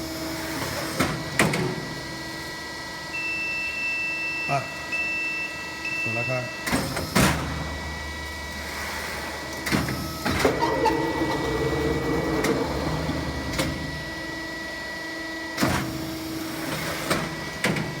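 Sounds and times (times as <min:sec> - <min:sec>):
die casting machine whine and hum: 0:07.4 - 0:16.4.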